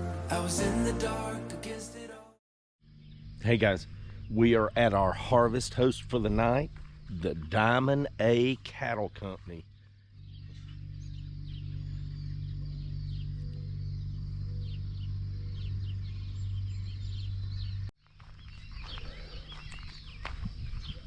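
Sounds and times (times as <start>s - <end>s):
small birds chirping: 2.8s - 21.0s
steady low hum: 2.9s - 17.9s.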